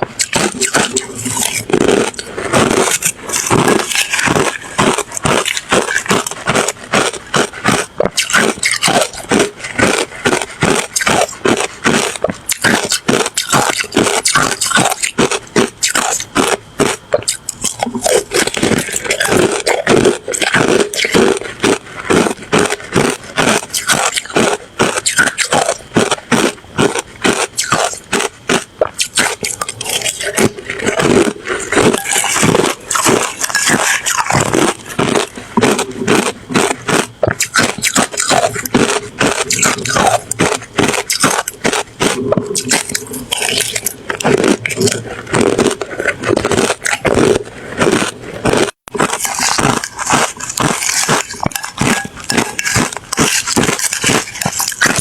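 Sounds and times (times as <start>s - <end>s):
person crunching ice: 0.0s - 55.0s.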